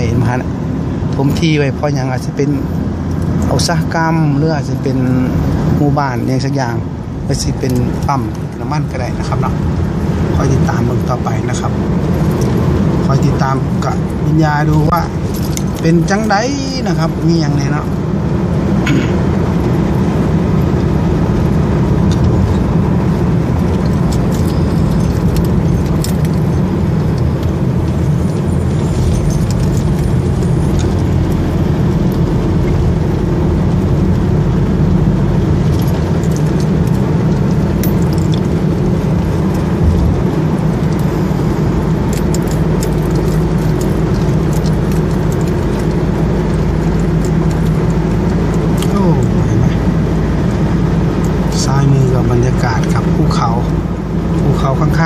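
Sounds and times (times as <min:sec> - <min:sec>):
car road noise inside cabin: 0:00.0 - 0:55.0
light rattles and clicks: 0:07.3 - 0:17.8, 0:20.7 - 0:34.3, 0:35.2 - 0:53.7.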